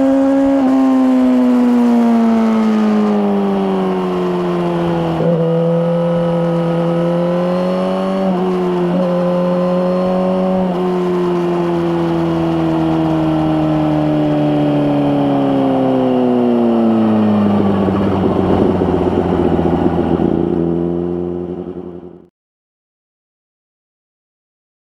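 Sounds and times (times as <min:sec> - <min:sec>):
motorcycle engine running: 0:00.0 - 0:22.3.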